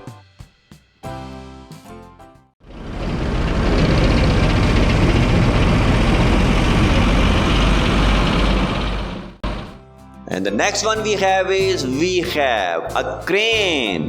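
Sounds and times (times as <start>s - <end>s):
road roller engine rumbling: 2.6s - 9.8s.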